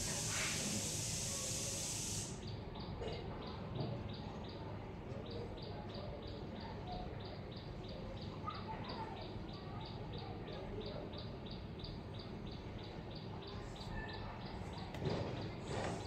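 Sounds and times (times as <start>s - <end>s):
steady hiss: 0.0s - 2.4s.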